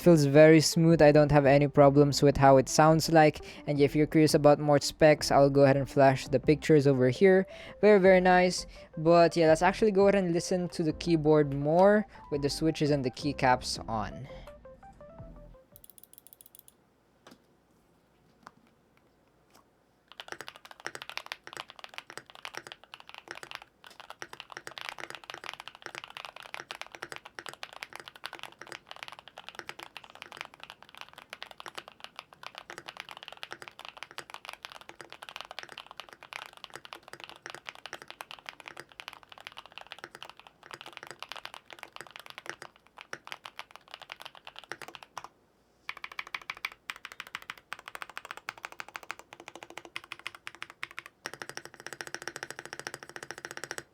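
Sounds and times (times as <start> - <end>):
mechanical keyboard typing: 15.8 - 16.8, 20.1 - 45.3, 45.9 - 53.9.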